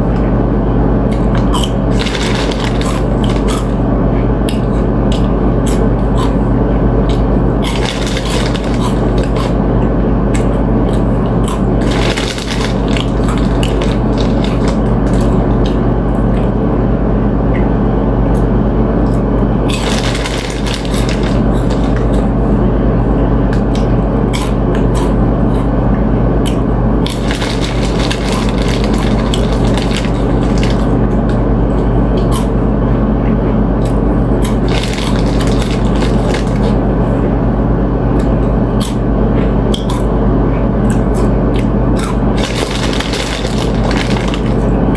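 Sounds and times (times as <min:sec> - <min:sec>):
steady low hum: 0:00.0 - 0:44.9
crunchy chewing: 0:01.1 - 0:16.6, 0:18.4 - 0:22.7, 0:23.5 - 0:25.8, 0:26.4 - 0:32.6, 0:33.8 - 0:37.1, 0:40.8 - 0:44.9.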